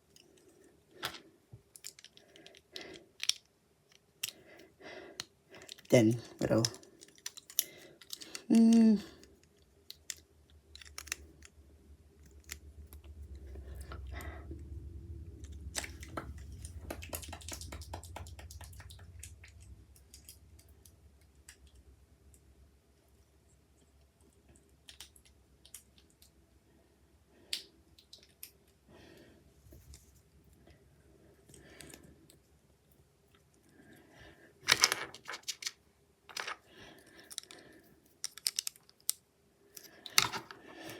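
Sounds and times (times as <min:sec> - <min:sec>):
plastic bricks clicking together: 0:01.0 - 0:04.4, 0:05.2 - 0:11.5, 0:34.7 - 0:36.6, 0:37.2 - 0:39.2
person humming: 0:08.4 - 0:09.2
low handling rumble: 0:10.3 - 0:22.4.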